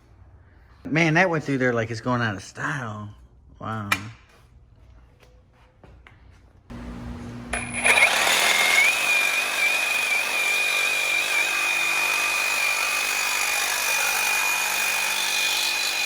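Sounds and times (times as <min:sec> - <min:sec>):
reciprocating saw cutting metal pipe: 0:07.6 - 0:16.0.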